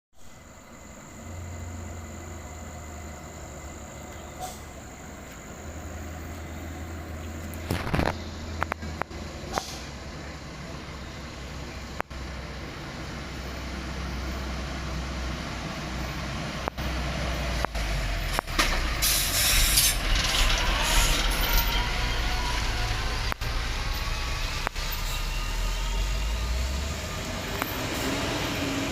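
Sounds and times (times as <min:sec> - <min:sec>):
diesel truck engines idling: 0:00.2 - 0:28.9
air brake hiss: 0:04.4 - 0:04.8, 0:09.5 - 0:10.0, 0:19.0 - 0:20.0.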